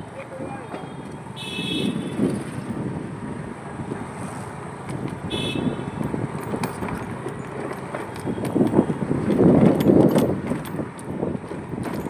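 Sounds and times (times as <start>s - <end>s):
street traffic: 0.0s - 12.0s
vehicle horn tooting: 0.8s - 2.3s, 5.2s - 6.0s.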